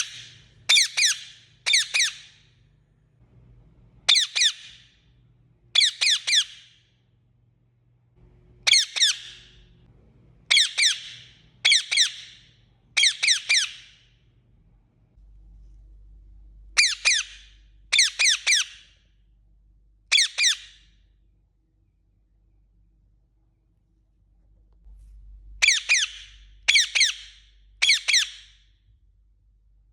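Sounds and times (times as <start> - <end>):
parakeet calling: 0.0 - 2.5, 4.0 - 5.0, 5.7 - 6.8, 8.6 - 9.7, 10.5 - 14.1, 16.7 - 19.0, 20.1 - 20.9, 25.6 - 28.6.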